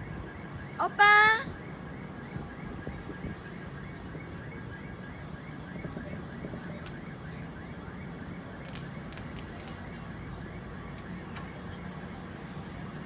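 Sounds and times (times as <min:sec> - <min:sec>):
car alarm chirping: 0:09.8 - 0:12.2.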